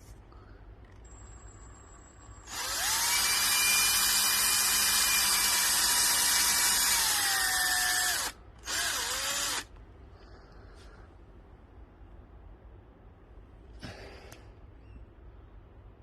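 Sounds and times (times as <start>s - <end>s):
power drill running: 2.0s - 9.7s.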